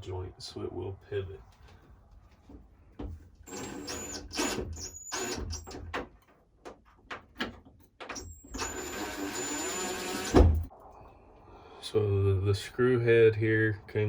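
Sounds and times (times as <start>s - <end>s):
power screwdriver whining: 3.5s - 5.8s, 8.2s - 10.4s
knocks and clatter of handling parts: 5.5s - 8.4s.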